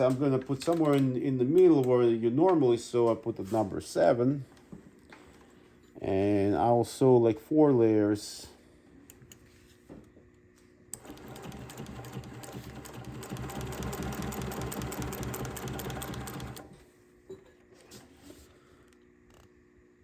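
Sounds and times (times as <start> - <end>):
sewing machine stitching: 11.0 - 16.7.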